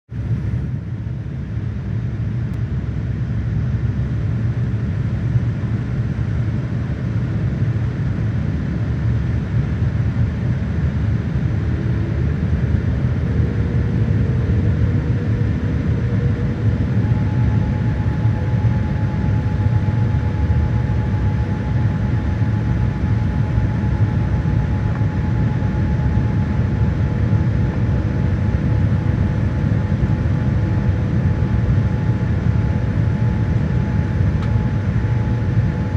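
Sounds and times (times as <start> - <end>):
aircraft rumble in flight: 0.1 - 35.9
faint steady tones: 13.5 - 35.9.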